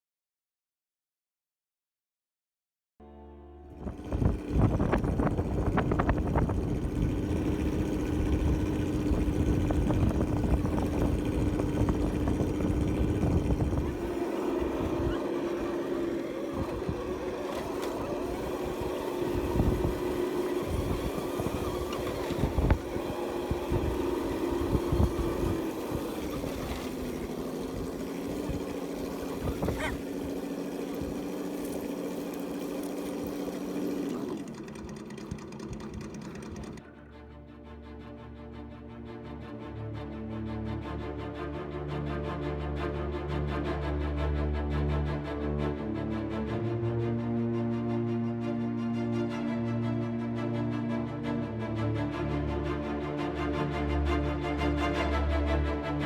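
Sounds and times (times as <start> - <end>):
wind buffeting microphone: 3.8 - 34.0
toy car motor whine: 3.9 - 36.8.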